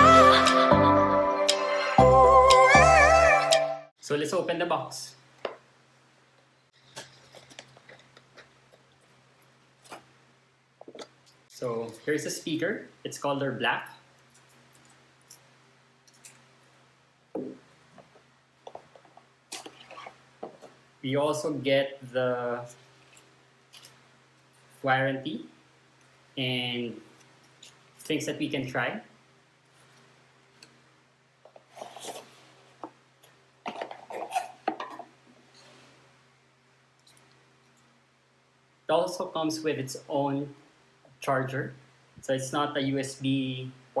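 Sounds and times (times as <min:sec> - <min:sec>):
box unpacking clicks and rustles: 0:06.9 - 0:08.9.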